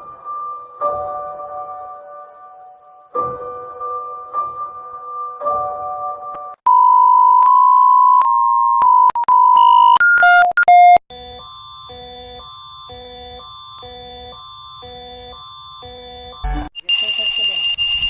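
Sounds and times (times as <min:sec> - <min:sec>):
short alternating beeps: 0:06.7 - 0:18.0
harsh electronic alarm beep: 0:08.9 - 0:18.0.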